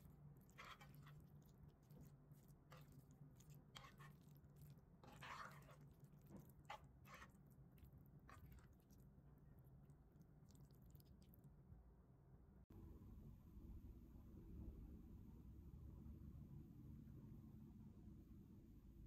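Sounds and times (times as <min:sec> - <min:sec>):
soft clicks and squishes: 0:00.0 - 0:11.6
low steady hum: 0:00.0 - 0:19.0.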